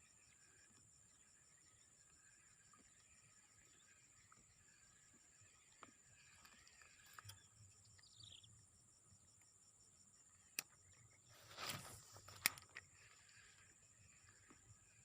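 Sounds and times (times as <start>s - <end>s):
insects trilling: 0.0s - 15.0s
brief rustle: 11.3s - 13.2s.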